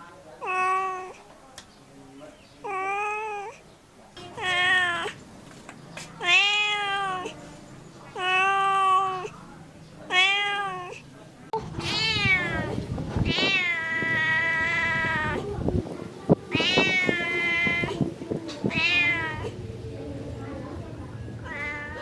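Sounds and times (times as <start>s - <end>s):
cat meowing: 0.4s - 1.2s, 2.6s - 3.6s, 4.2s - 5.2s, 6.0s - 7.4s, 8.2s - 9.3s, 10.1s - 11.0s, 11.8s - 15.4s, 16.5s - 19.6s, 21.4s - 22.0s.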